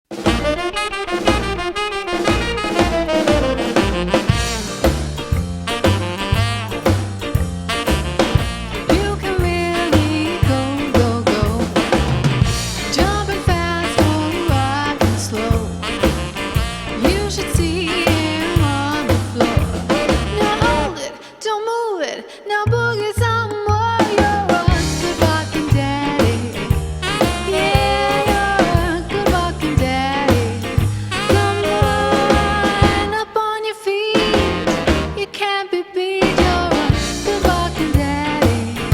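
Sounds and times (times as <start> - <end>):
upbeat music with drum beat: 0.1 - 20.9, 24.0 - 33.2, 34.2 - 35.2, 36.2 - 38.9.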